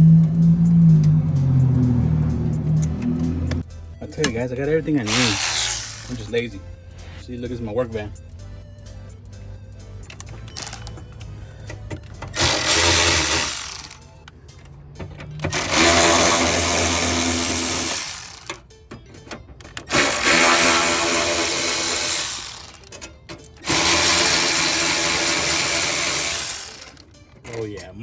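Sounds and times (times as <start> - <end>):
power drill running: 5.1 - 6.4, 10.6 - 10.9, 12.4 - 14.0, 15.5 - 18.6, 19.9 - 22.9, 23.6 - 27.0.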